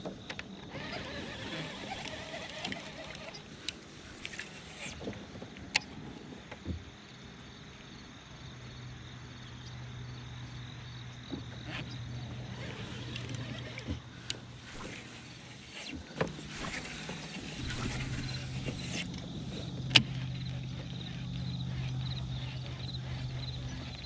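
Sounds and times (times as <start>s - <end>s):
knocks and clicks on kayak: 11.3s - 22.4s.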